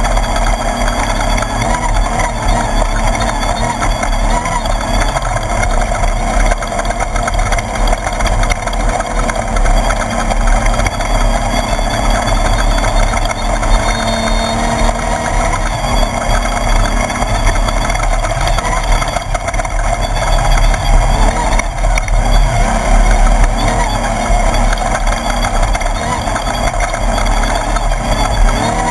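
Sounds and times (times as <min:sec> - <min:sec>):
buggy engine running: 0:00.0 - 0:28.9
chassis rattling and knocking: 0:00.0 - 0:28.9.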